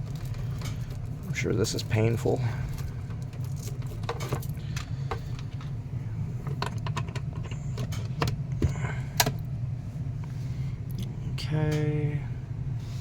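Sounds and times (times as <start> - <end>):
furnace humming: 0.0 - 13.0
power cord clicking and rattling: 6.4 - 9.4.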